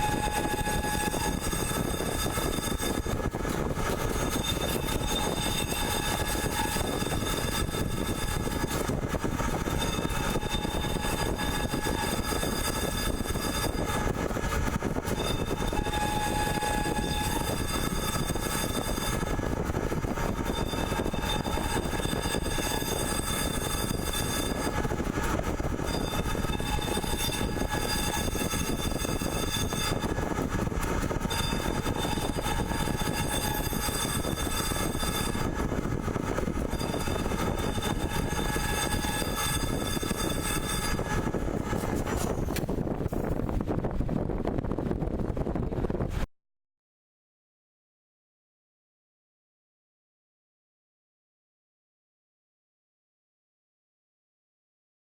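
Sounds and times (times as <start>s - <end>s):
high whining tones: 0.0s - 42.8s
pipe threading machine running: 0.0s - 42.9s.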